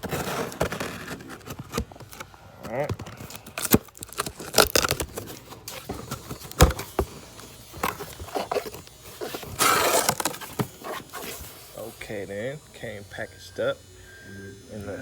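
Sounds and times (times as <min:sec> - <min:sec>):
cardboard box knocks and scrapes: 0:00.0 - 0:02.1, 0:05.8 - 0:07.2
cardboard tearing rustle: 0:00.0 - 0:12.2.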